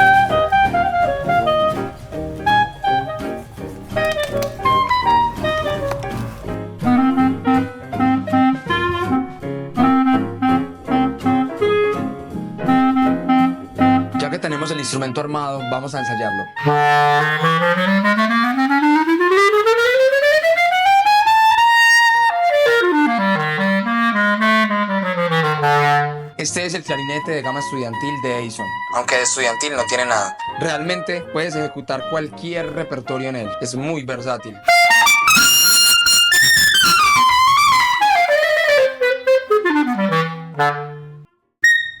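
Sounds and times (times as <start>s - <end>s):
solo clarinet: 0.0s - 6.6s, 16.6s - 26.4s, 34.7s - 42.0s.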